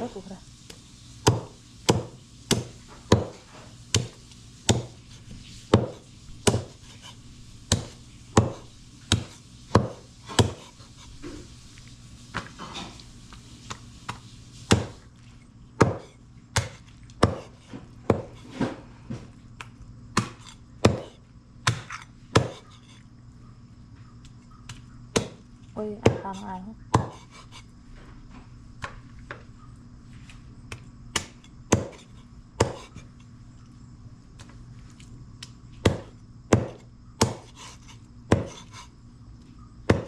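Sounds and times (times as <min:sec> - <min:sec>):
knife chopping raw chicken: 0:01.2 - 0:05.0, 0:05.7 - 0:10.8, 0:14.1 - 0:15.0, 0:15.8 - 0:18.8, 0:20.1 - 0:22.8, 0:24.7 - 0:25.4, 0:26.0 - 0:27.6, 0:30.7 - 0:33.1, 0:35.8 - 0:38.9.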